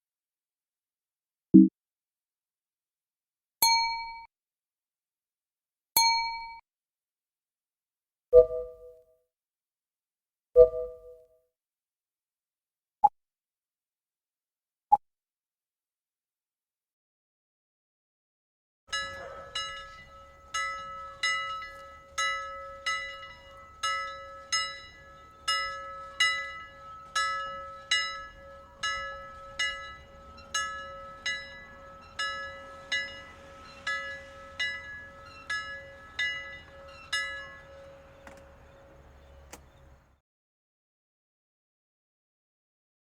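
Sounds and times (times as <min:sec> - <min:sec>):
metallic alarm bell strikes: 0:18.9 - 0:39.6.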